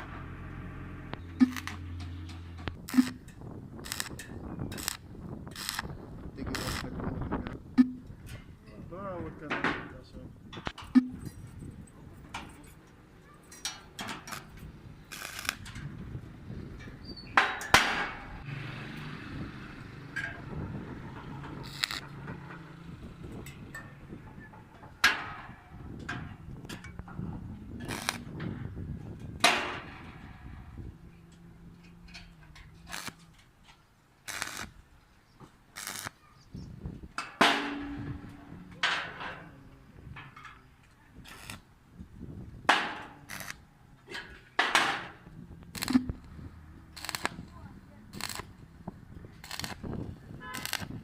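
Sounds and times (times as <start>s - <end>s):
steel pieces knocking and clanking: 12.3s - 15.9s, 16.8s - 18.3s, 20.1s - 27.0s, 27.9s - 30.8s, 37.2s - 39.4s, 42.7s - 43.5s, 44.1s - 45.2s.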